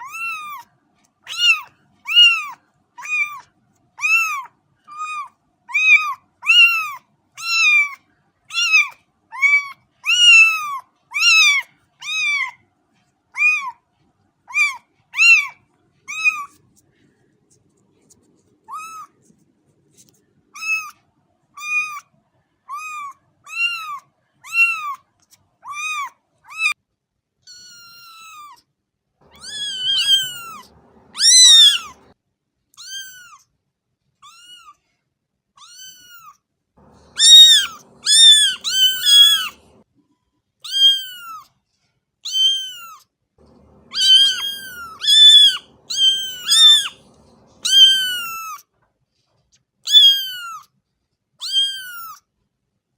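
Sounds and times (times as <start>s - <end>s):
kittens mewing: 1.3s - 3.4s, 4.0s - 12.6s, 14.5s - 16.6s, 20.6s - 20.9s, 22.7s - 25.0s, 29.2s - 32.1s, 35.6s - 39.8s, 40.7s - 41.4s, 42.3s - 48.6s, 49.9s - 50.7s, 51.4s - 52.2s.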